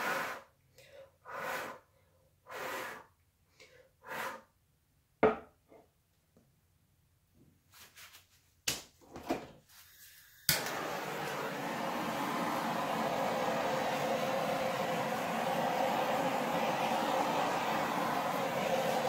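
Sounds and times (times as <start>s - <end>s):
breathy puffs of air: 0.0s - 4.5s.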